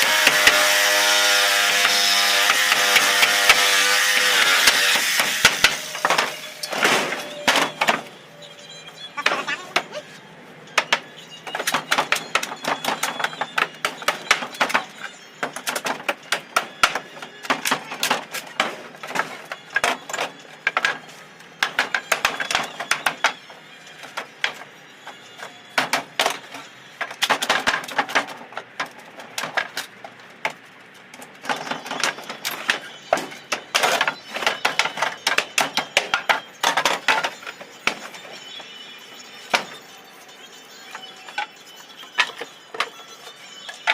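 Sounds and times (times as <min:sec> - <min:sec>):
hammer striking wooden boards: 0:00.0 - 0:08.1, 0:10.8 - 0:21.0, 0:21.6 - 0:23.4, 0:25.4 - 0:29.8, 0:31.4 - 0:38.3, 0:39.5 - 0:39.8.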